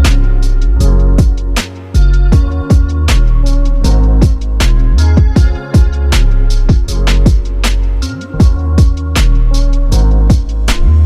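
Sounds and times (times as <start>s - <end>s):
electronic music with heavy bass: 0.0s - 11.0s.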